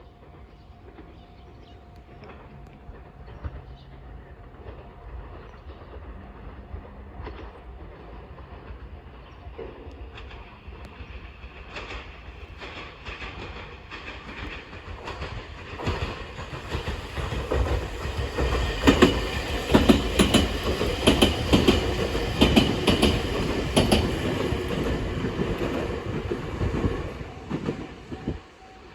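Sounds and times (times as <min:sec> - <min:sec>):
electric train passing: 0:00.0 - 0:28.9
wheels clacking over rail joints: 0:07.2 - 0:28.6.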